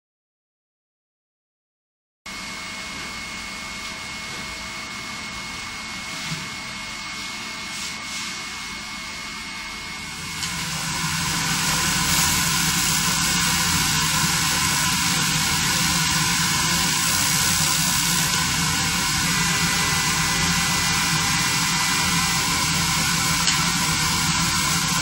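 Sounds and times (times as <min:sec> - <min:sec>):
laser cleaner hissing: 0:09.8 - 0:25.0.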